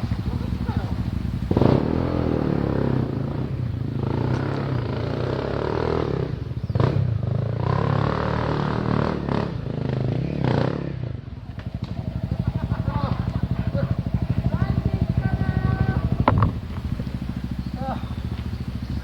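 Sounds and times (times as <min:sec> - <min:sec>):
motorcycle engine revving: 0:00.0 - 0:19.0
sharp knocks and clatters: 0:16.2 - 0:16.8.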